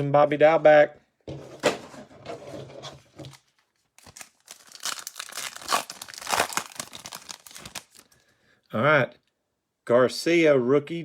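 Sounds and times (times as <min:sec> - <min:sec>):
plastic wrapping tearing and crinkling: 0:04.0 - 0:08.2.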